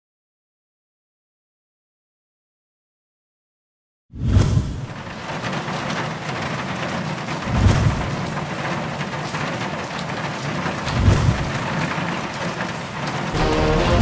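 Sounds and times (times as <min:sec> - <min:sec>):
heavy rain hiss: 0:04.9 - 0:14.0
deep low booms: 0:07.5 - 0:08.2, 0:10.9 - 0:11.6.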